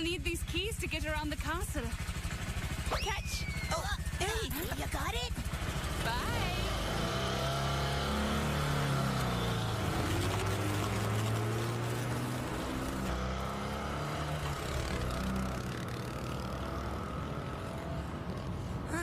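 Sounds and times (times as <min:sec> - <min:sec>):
car engine running: 0:00.5 - 0:19.0
vehicle driving off: 0:05.4 - 0:19.0.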